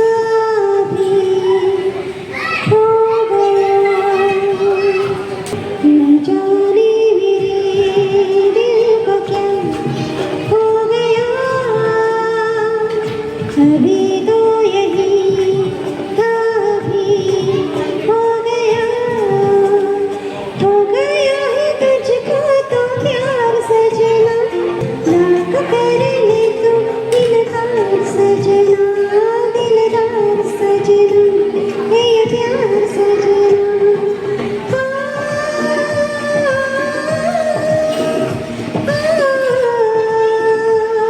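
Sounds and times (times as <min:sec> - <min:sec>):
soft instrumental backing: 0:00.0 - 0:41.0
woman singing: 0:00.0 - 0:41.0.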